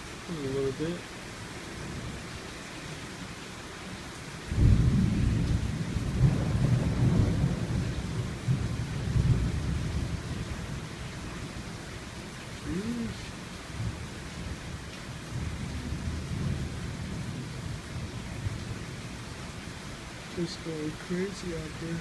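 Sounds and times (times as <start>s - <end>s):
rain falling: 0.0s - 22.0s
thunder rumbling: 4.5s - 11.8s, 13.8s - 19.2s.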